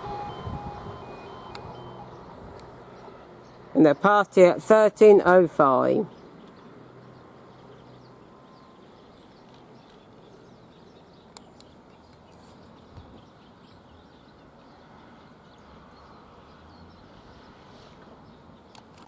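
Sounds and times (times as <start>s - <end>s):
faint birdsong chirping: 0.0s - 4.3s, 5.8s - 19.0s
sharp clicks: 18.7s - 19.0s.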